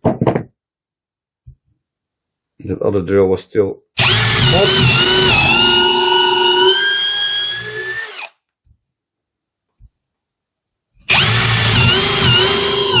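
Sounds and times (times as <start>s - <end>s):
cordless drill whining: 4.0s - 8.4s, 11.1s - 13.0s.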